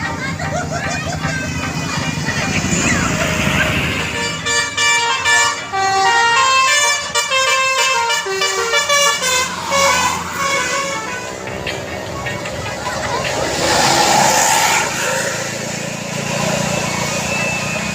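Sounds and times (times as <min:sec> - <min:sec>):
traffic noise: 0:00.0 - 0:17.9
bus air horn playing a tune: 0:04.0 - 0:11.6.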